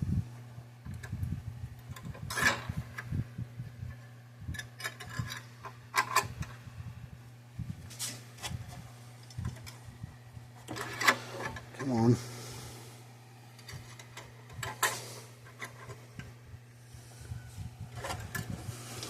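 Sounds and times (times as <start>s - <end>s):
low electrical hum: 0.0s - 19.0s.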